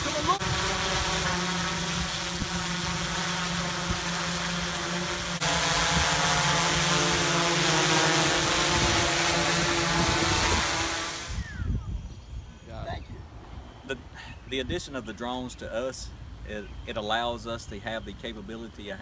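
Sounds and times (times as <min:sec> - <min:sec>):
drone propellers buzzing: 0:00.0 - 0:12.7.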